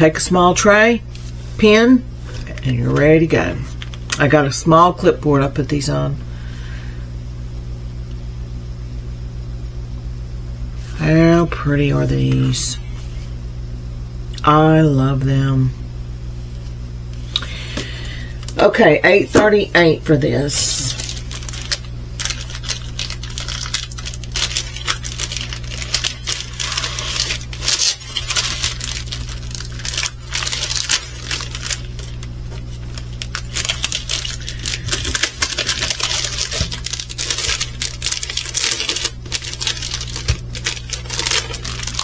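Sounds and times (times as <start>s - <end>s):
steady low hum: 0.0s - 42.0s
plastic packaging crinkling: 2.2s - 4.2s, 20.4s - 42.0s.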